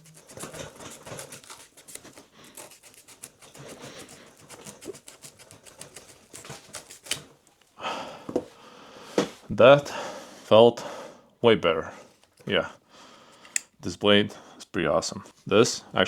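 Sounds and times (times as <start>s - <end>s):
knife sawing through rope: 0.0s - 7.3s.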